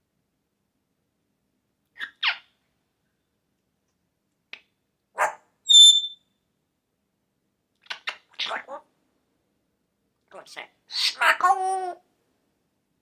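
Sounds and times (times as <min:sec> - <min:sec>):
parrot calling: 0:02.0 - 0:02.5, 0:05.2 - 0:06.2, 0:07.9 - 0:08.8, 0:10.4 - 0:12.0
parrot high whistle: 0:05.7 - 0:06.2.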